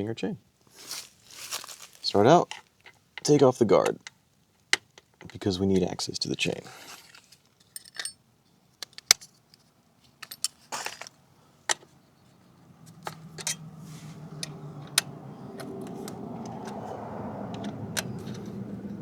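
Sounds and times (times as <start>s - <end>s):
light metal clicks and clinks: 7.6s - 8.2s, 12.9s - 16.8s.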